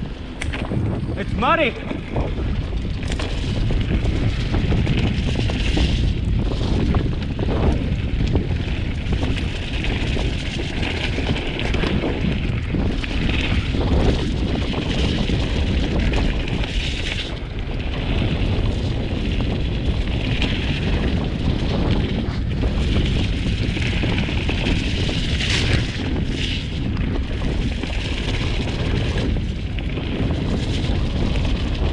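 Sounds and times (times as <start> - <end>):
bike rolling over rough trail: 0.0 - 31.9
wind rumble on microphone: 0.0 - 31.9.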